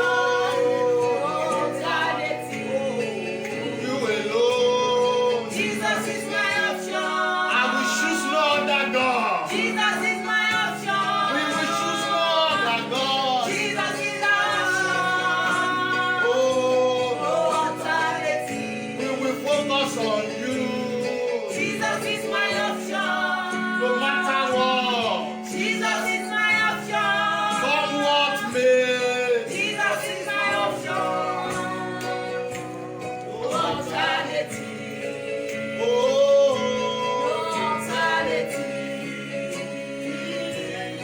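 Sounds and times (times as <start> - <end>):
woman singing: 0.0 - 4.5, 5.3 - 28.7, 29.3 - 36.2, 37.0 - 41.0
held accompaniment chords: 0.0 - 41.0.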